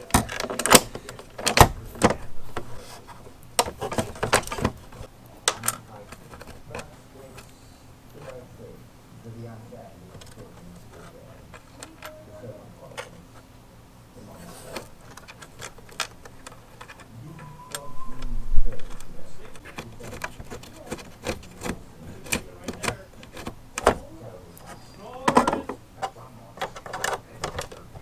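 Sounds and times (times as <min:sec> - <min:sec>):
hand tools clicking and tapping: 0:00.0 - 0:07.6, 0:14.6 - 0:28.0
brief squeak: 0:17.4 - 0:19.1.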